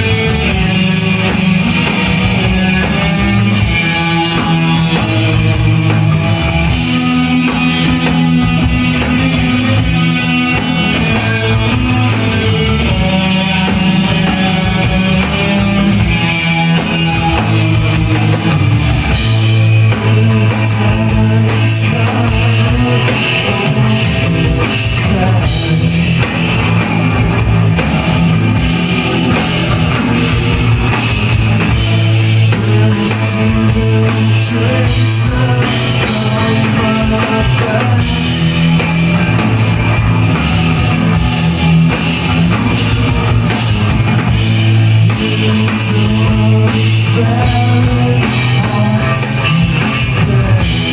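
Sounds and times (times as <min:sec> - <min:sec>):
distorted electric guitar: 0:00.0 - 0:50.9
drum kit: 0:00.0 - 0:50.9
rock music: 0:00.0 - 0:50.9
person singing: 0:19.8 - 0:26.8, 0:32.2 - 0:39.4, 0:45.0 - 0:50.9.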